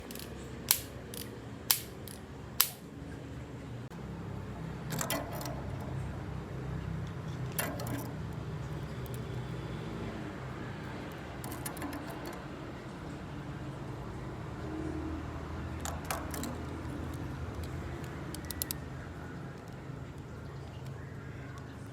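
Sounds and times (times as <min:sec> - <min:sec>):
rattling clicks of gun handling: 0:00.0 - 0:02.8, 0:07.5 - 0:08.1, 0:11.1 - 0:12.4, 0:15.8 - 0:18.8
toy gun shots snapping: 0:00.0 - 0:02.9.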